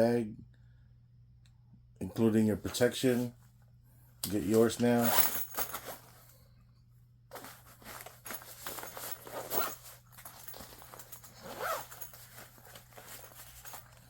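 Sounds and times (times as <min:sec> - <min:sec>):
fabric rustling: 0:07.3 - 0:14.0
zipper being pulled: 0:08.0 - 0:14.0.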